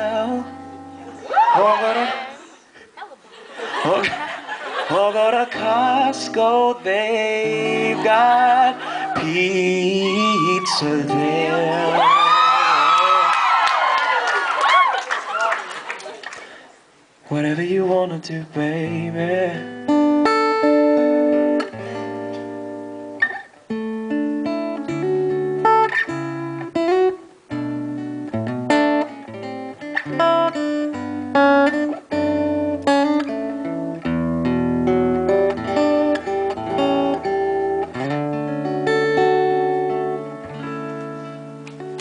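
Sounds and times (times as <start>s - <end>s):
acoustic guitar strumming chords: 0.0s - 1.2s, 4.9s - 12.0s, 17.5s - 42.0s.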